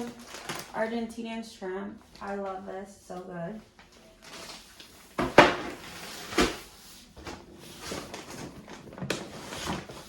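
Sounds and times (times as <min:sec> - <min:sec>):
packaging rustling: 0:00.0 - 0:01.0, 0:03.8 - 0:06.7, 0:07.4 - 0:10.0.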